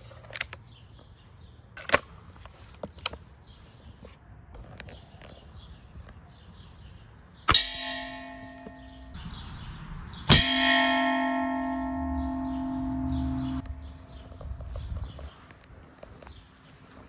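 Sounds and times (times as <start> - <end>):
pellet ringing metal pan: 7.5 - 9.2.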